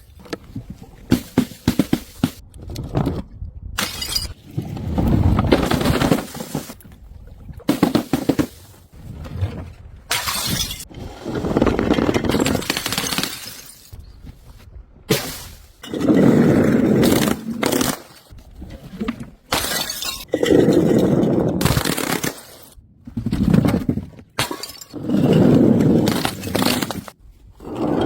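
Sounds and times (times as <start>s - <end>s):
glass bottles shattering: 3.8s - 4.4s, 10.1s - 10.9s, 12.3s - 14.0s, 19.5s - 20.3s, 24.4s - 25.0s.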